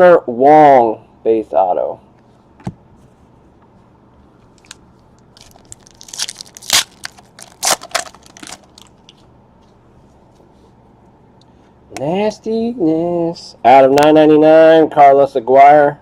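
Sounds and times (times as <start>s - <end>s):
crinkling card packaging: 4.4s - 9.3s.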